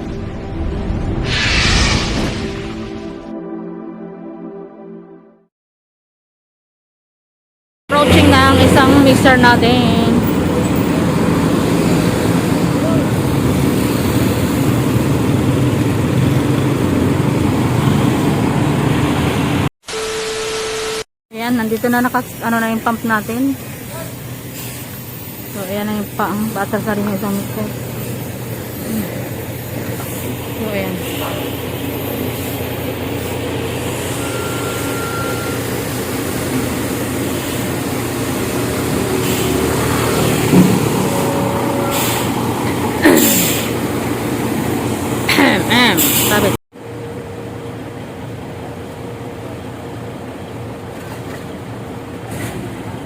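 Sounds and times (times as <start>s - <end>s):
diesel truck engine running: 7.9s - 19.6s
heavy diesel engines rumbling: 7.9s - 19.7s, 21.5s - 53.0s.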